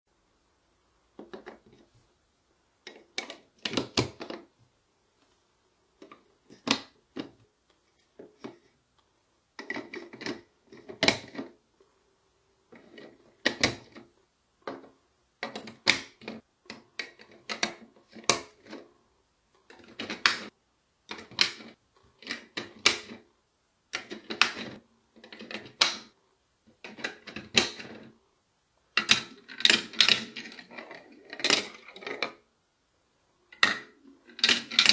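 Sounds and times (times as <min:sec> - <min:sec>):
plastic toy parts clicking: 0:09.6 - 0:11.5, 0:14.6 - 0:18.9, 0:23.9 - 0:26.2, 0:26.8 - 0:28.1, 0:29.0 - 0:32.4, 0:33.5 - 0:34.9.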